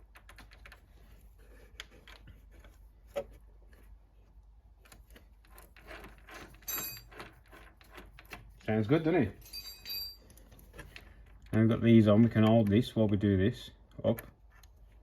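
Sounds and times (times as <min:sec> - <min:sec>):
ringing metal clink: 0:06.6 - 0:07.2, 0:09.4 - 0:10.4.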